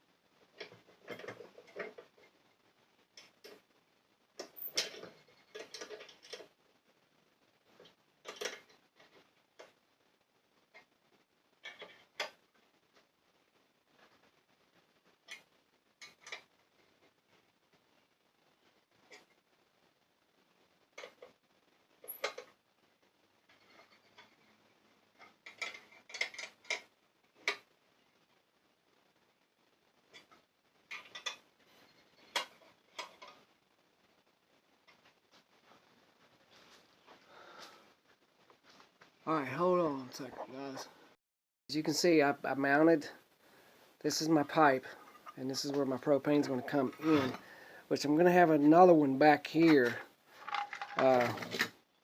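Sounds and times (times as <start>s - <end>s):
metal tools clinking: 4.4s - 6.4s
objects knocking and clinking: 50.4s - 51.7s.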